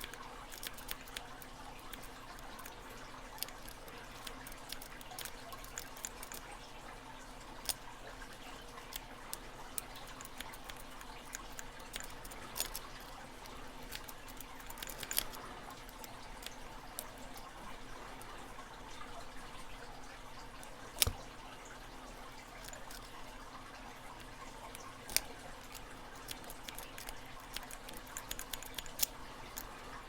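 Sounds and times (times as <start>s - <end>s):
lock pick clicks and scratches: 0.0s - 6.5s, 7.6s - 17.5s, 20.9s - 21.2s, 22.5s - 23.2s, 24.2s - 29.7s
faint steady hiss: 0.0s - 30.0s.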